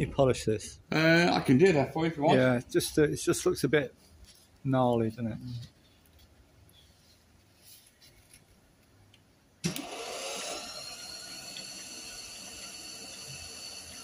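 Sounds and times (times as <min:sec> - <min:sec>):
electric motor whining: 0:09.6 - 0:14.0.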